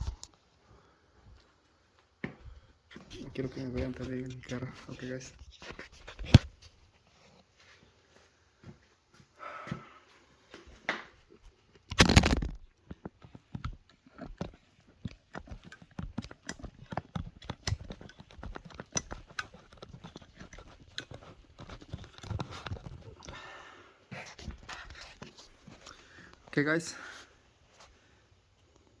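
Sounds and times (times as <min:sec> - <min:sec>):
crimping tool clicks and creaks: 0:11.7 - 0:23.4.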